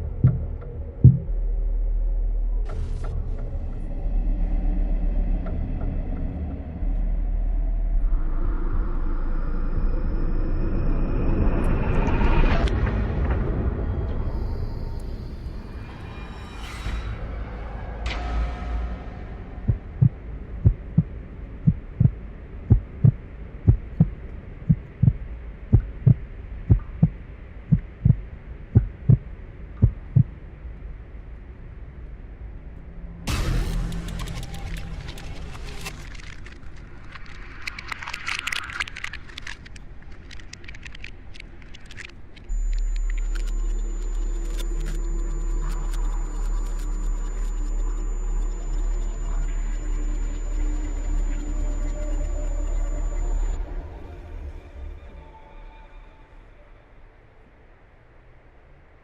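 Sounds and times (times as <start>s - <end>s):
heartbeat thumps: 0.0s - 1.4s, 19.6s - 30.4s
low hum: 0.0s - 59.0s
car driving low rumble: 19.0s - 37.1s.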